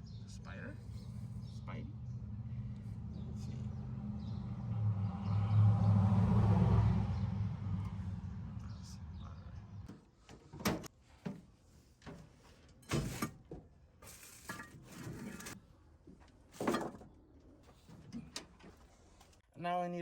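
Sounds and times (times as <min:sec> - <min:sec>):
low vehicle rumble: 0:00.0 - 0:09.9
knocks and clatters: 0:16.2 - 0:18.8.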